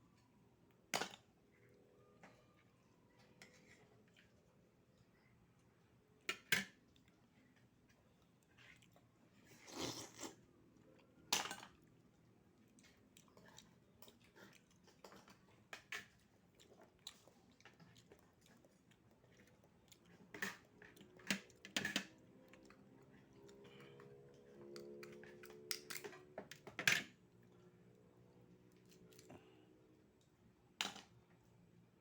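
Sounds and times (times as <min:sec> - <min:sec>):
person chewing oysters: 0:12.5 - 0:21.3.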